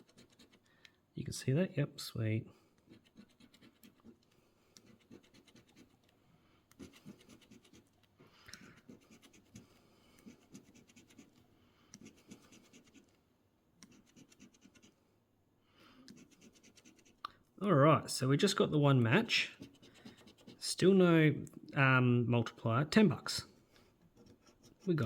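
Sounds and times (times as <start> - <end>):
coin scratching lottery ticket: 4.9 - 5.9.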